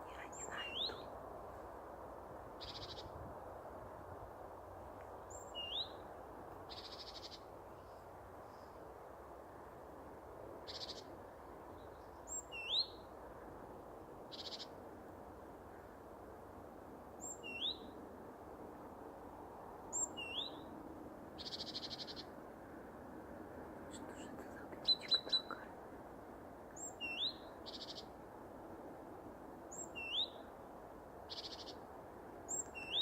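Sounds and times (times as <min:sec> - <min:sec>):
faint background hiss: 0:00.0 - 0:33.0
bird whistled call: 0:29.7 - 0:30.4.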